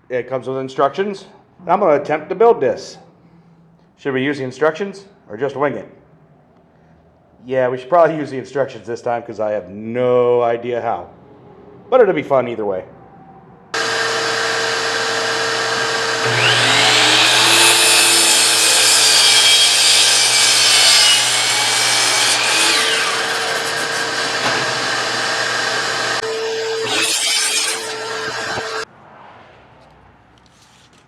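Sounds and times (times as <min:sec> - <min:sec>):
electric saw running: 0:13.8 - 0:28.8
saw cutting through wood: 0:13.8 - 0:28.9.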